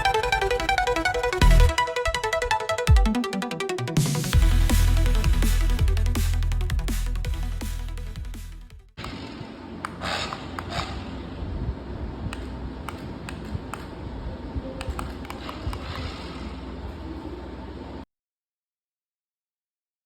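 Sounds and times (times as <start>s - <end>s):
music: 0.0s - 9.0s.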